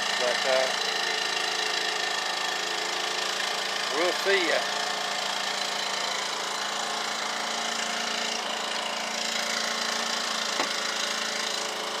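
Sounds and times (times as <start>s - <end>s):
steady mechanical hum: 0.0s - 12.0s
small knock: 10.6s - 10.8s.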